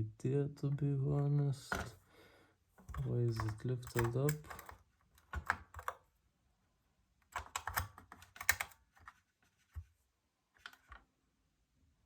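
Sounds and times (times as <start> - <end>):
small plastic clicks and rattles: 2.8 - 6.0, 7.2 - 9.2.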